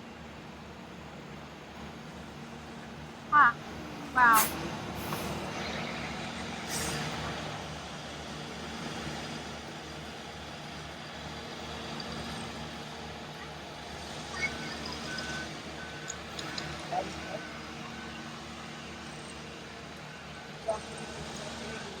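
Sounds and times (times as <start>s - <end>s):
diesel engine running: 0.1s - 22.0s
hiss of released air: 4.3s - 5.4s, 6.7s - 7.1s.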